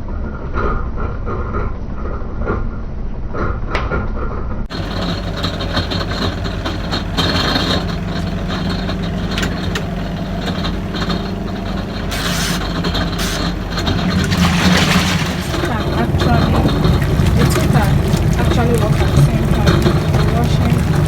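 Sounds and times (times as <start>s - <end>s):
machine humming: 4.7s - 21.0s.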